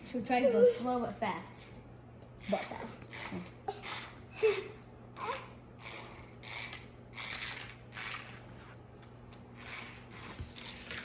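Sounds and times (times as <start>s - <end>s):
toy car motor whirring: 2.4s - 4.2s, 5.2s - 8.4s, 9.6s - 11.0s.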